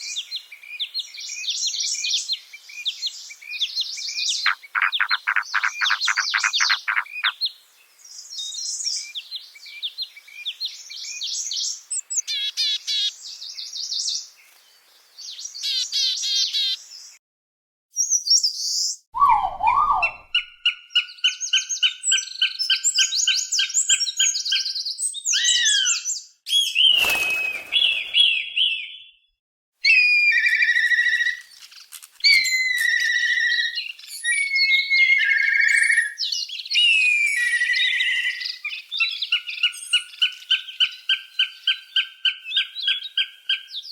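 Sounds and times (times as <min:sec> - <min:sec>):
bird chirps and trills: 0:04.3 - 0:07.5, 0:23.1 - 0:29.1
whistled bird notes: 0:18.0 - 0:41.8.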